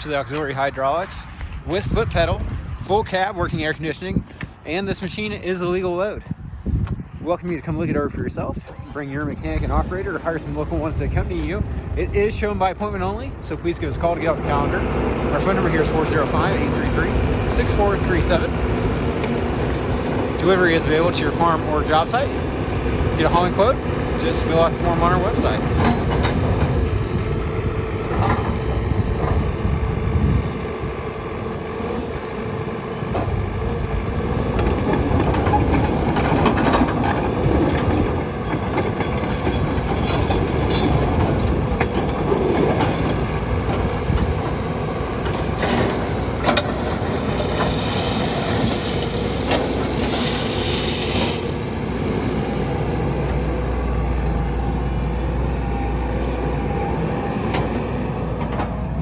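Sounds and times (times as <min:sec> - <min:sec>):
excavator diesel engine running: 0:08.6 - 0:59.0
hydraulic hissing: 0:08.7 - 0:18.5
deep rumble: 0:08.8 - 0:56.7
machine knocks and clanks: 0:25.0 - 0:26.9, 0:34.5 - 0:44.6, 0:45.2 - 0:47.7.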